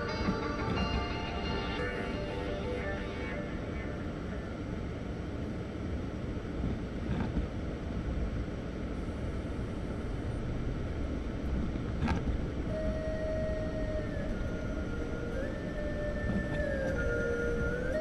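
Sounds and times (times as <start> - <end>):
car driving rumble: 0.0 - 18.0
faint held tone changing pitch: 12.7 - 18.0.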